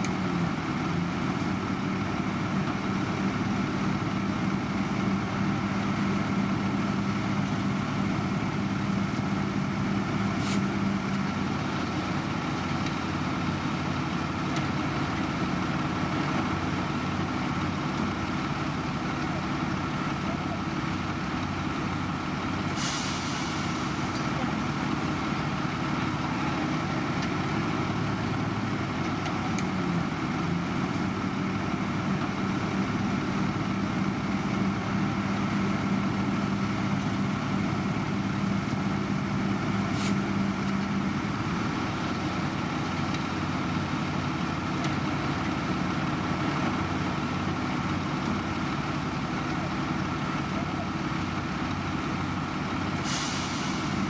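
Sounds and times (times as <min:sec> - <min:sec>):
construction machine engine running: 0:00.0 - 0:54.0
air hissing: 0:22.7 - 0:24.1, 0:53.0 - 0:54.0.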